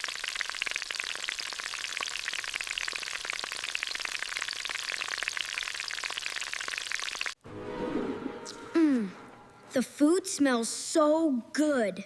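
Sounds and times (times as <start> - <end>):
food sizzling in a pan: 0.0 - 7.4.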